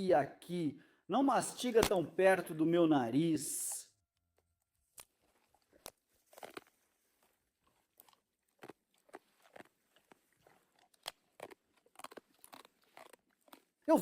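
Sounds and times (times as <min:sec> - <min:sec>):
boar crunching a nut: 0:04.8 - 0:13.9.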